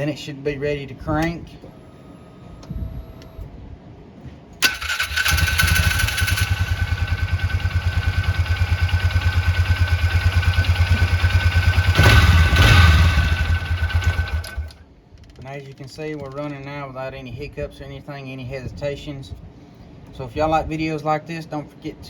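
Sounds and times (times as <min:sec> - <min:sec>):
engine cranking and running: 0:04.6 - 0:14.8.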